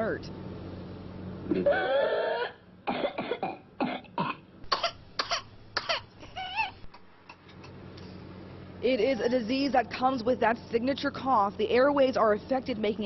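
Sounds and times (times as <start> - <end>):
short harsh coughs: 1.5 - 6.1.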